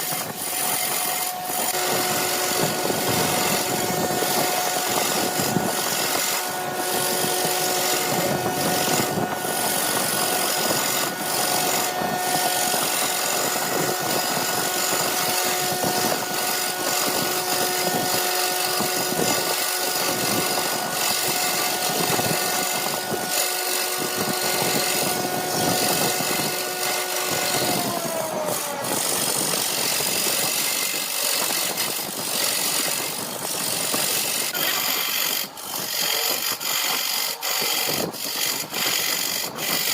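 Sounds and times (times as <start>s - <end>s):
hissing scraping cut: 0.0s - 39.9s
wood lathe whine: 0.0s - 39.9s.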